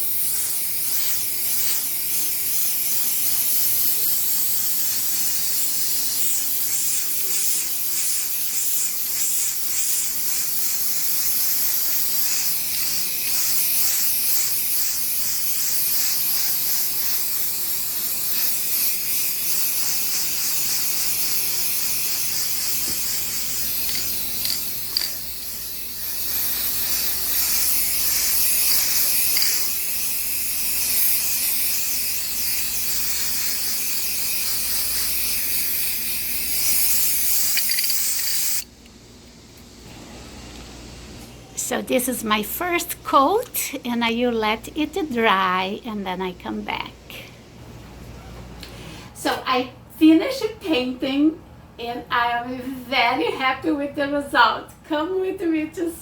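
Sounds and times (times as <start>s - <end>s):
spray paint can hissing: 0.0s - 38.7s.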